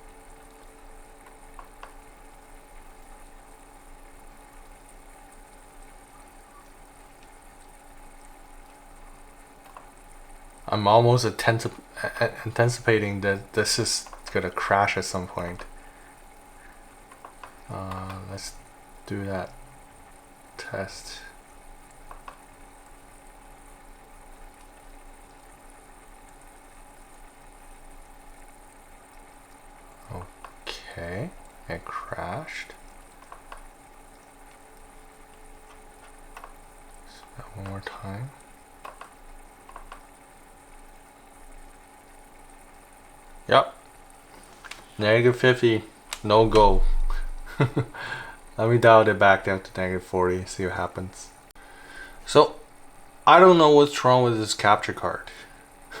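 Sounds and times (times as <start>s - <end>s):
faint constant tones: 0.0s - 56.0s
faint hum: 0.0s - 56.0s
quiet steady hiss: 0.0s - 56.0s
faint clicks: 0.1s - 3.4s, 4.2s - 10.2s, 14.0s - 14.4s, 15.6s - 18.7s, 21.2s - 22.6s, 29.1s - 30.7s, 32.7s - 40.4s, 44.4s - 44.9s, 46.0s - 47.4s.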